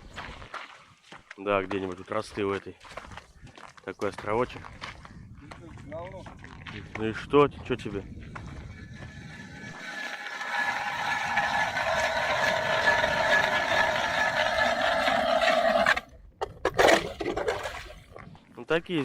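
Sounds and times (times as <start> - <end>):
ice auger grinding: 8.8 - 16.1.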